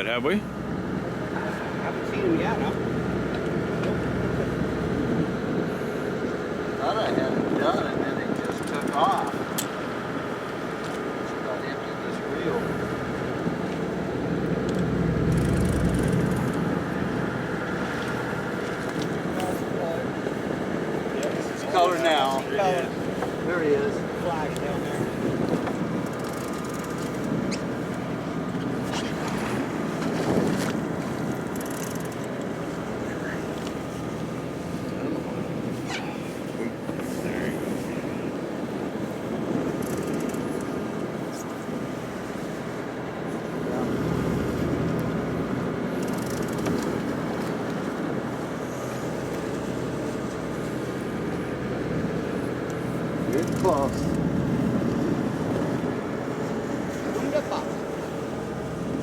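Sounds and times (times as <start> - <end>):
boat engine humming: 0.0 - 59.0
water noise: 0.0 - 59.0
wind: 0.0 - 59.0
wind noise on microphone: 3.6 - 10.4, 13.0 - 31.8, 53.3 - 57.2.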